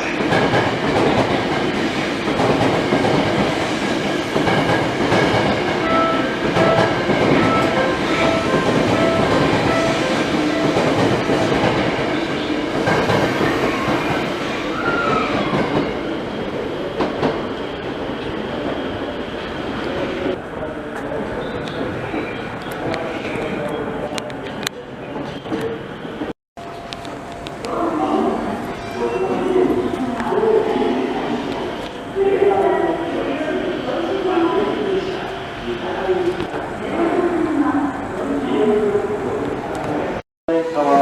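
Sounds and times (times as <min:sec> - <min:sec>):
train wheels clickety-clack: 0:00.0 - 0:12.1, 0:12.8 - 0:14.3.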